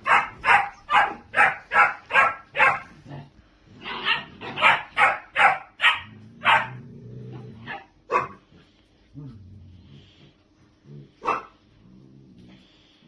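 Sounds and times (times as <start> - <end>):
dog barking rapidly: 0.0 - 3.0, 4.1 - 6.8, 7.7 - 8.4, 11.2 - 11.5.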